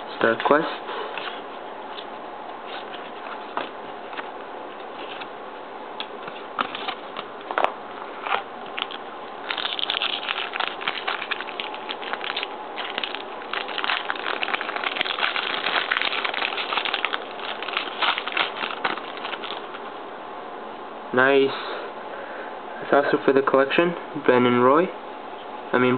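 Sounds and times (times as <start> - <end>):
plastic wrapper crinkling: 6.6 - 19.9.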